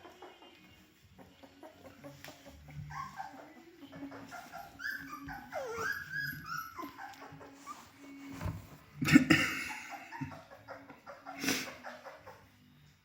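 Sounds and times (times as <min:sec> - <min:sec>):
puppies whimpering and squeaking: 0:00.0 - 0:09.0, 0:09.6 - 0:13.0.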